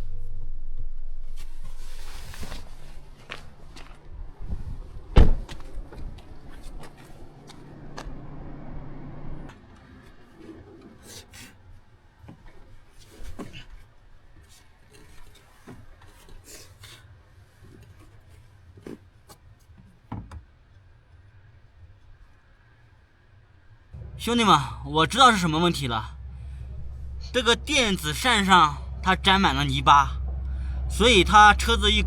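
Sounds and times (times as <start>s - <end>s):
steady low hum: 24.0s - 32.0s.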